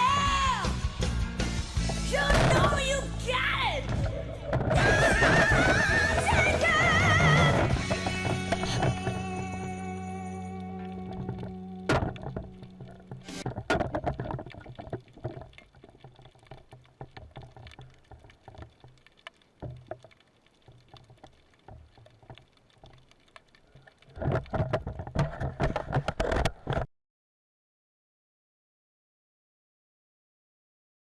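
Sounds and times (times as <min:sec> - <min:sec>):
water splashing and bubbling: 0:01.8 - 0:09.2, 0:10.8 - 0:26.5
small clicks and patters: 0:11.0 - 0:26.9.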